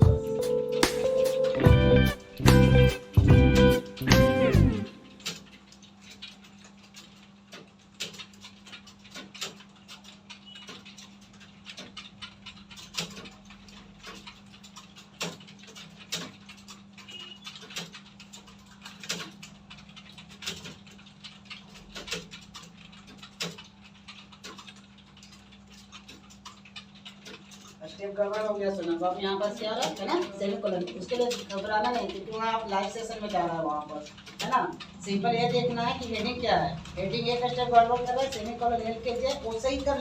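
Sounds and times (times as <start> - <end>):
steady low hum: 0.0 - 5.8
keyboard keys clacking: 0.0 - 40.0.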